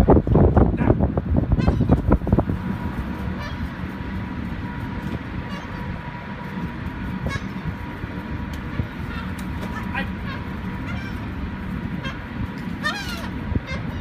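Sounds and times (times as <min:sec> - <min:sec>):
faint hum: 0:00.0 - 0:14.0
steady low rumble: 0:00.0 - 0:14.0
seagulls calling: 0:03.2 - 0:04.0, 0:05.1 - 0:06.2, 0:07.2 - 0:07.8, 0:08.6 - 0:14.0.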